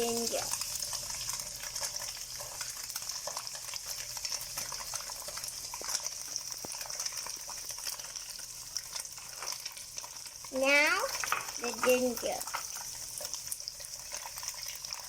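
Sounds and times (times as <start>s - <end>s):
tofu sizzling in hot oil: 0.0s - 15.0s.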